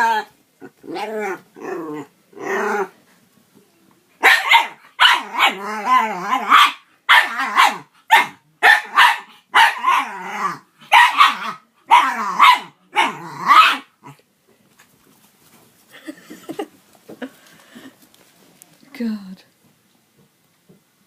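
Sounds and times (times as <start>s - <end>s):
dog barking and growling: 0.0s - 3.0s, 4.2s - 14.2s.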